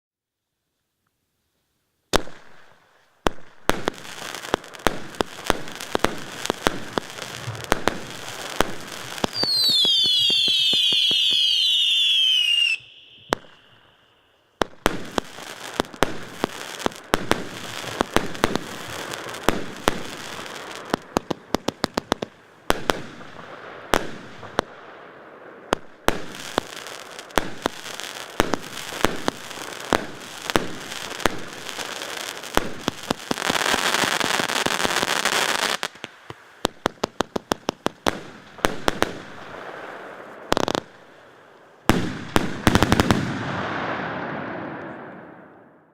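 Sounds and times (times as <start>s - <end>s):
firework crackling: 2.1s - 24.8s, 25.6s - 45.8s
firework bangs: 3.3s - 24.8s, 25.7s - 40.9s, 41.8s - 45.9s
falling firework whistles: 8.6s - 14.3s.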